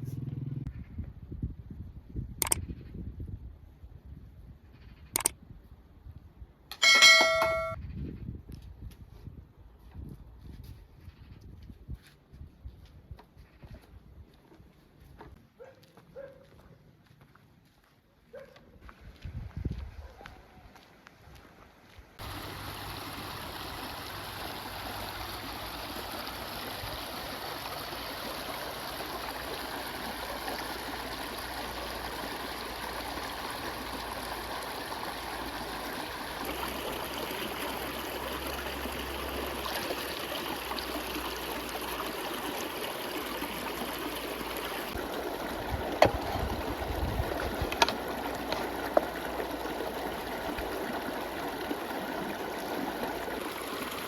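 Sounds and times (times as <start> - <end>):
water running: 22.2 - 54.0.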